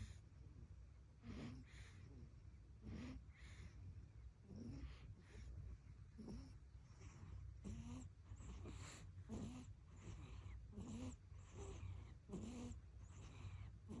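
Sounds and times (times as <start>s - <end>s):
baby snoring softly: 1.2s - 3.8s, 4.4s - 14.0s.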